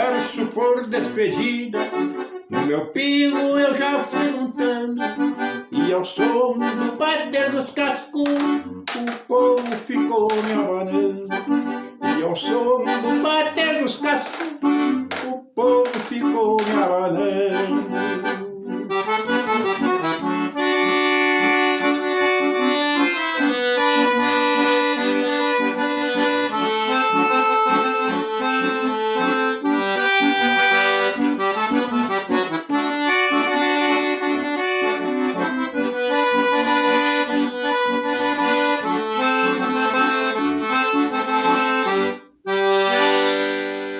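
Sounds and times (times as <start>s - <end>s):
accordion playing: 0.0s - 43.9s.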